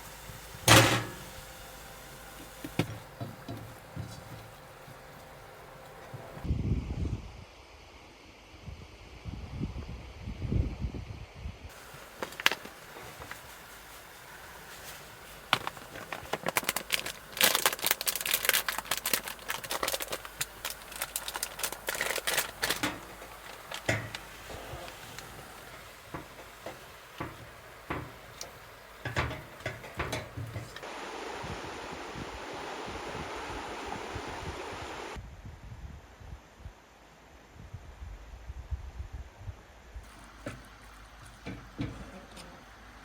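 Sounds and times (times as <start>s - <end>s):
handling clicks and crinkling: 0.0s - 6.5s, 11.7s - 30.9s
low hiss: 0.0s - 6.5s, 11.4s - 43.0s.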